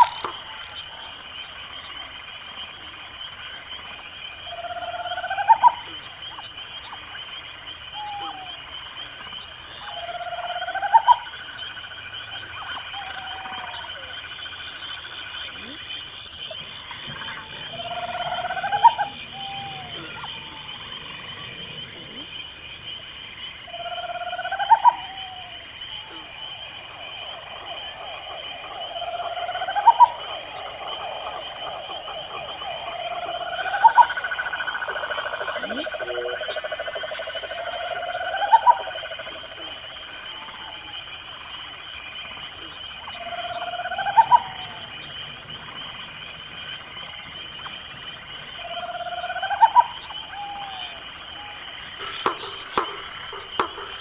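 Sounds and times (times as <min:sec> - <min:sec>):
crickets trilling: 0:00.0 - 0:54.0
high ticks: 0:51.9 - 0:54.0.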